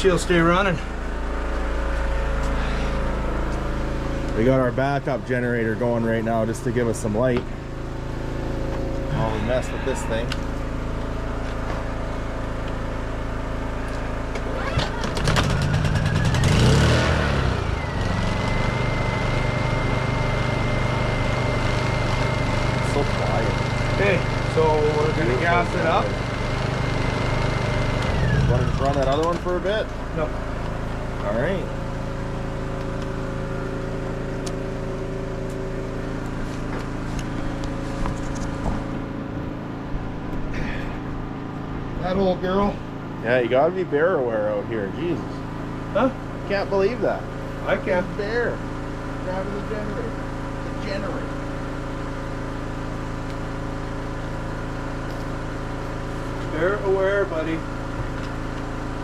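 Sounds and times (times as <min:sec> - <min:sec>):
generator high whine: 0:00.0 - 0:59.0
generator running: 0:00.0 - 0:59.0
generator cranking and starting: 0:12.4 - 0:41.5.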